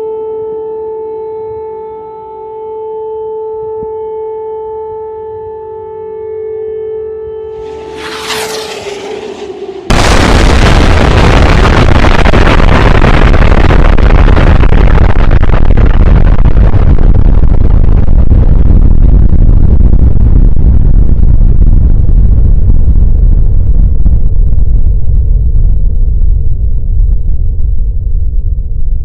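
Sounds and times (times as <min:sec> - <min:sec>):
explosion with heavy rumble: 0:07.6 - 0:29.0.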